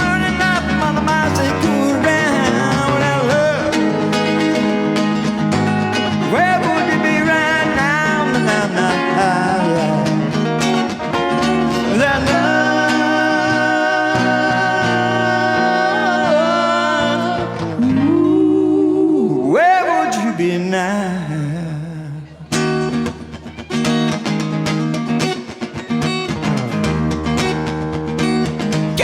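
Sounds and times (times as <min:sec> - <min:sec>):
sliding lead melody: 0:00.0 - 0:17.7
acoustic guitars strumming: 0:00.0 - 0:29.0.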